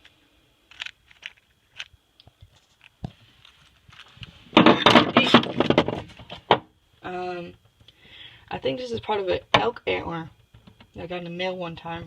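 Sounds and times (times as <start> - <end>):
hard objects rummaged and clattering: 0.7 - 6.7.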